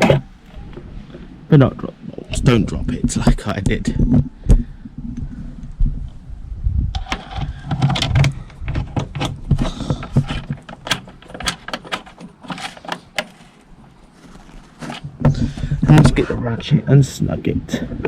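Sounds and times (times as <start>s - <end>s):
plastic parts clicking and rattling: 7.0s - 16.2s.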